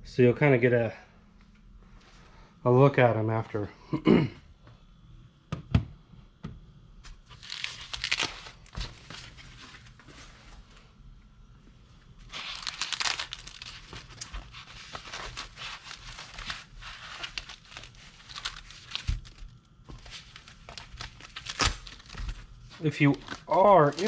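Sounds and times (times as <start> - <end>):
packaging wrap crinkling: 7.1 - 10.1, 12.2 - 24.0.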